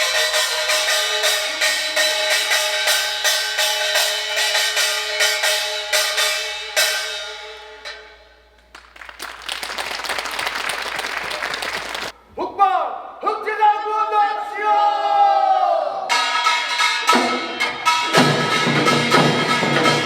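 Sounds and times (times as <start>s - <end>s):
audience applause: 8.7s - 12.2s
percussion band playing: 8.9s - 12.1s, 16.1s - 20.0s.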